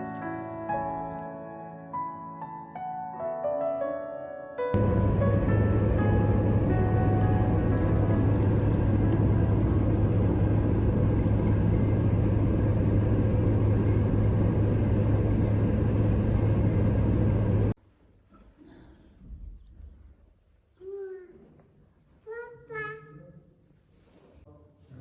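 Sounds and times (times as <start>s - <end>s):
low rumble with deep hum: 4.8s - 17.8s.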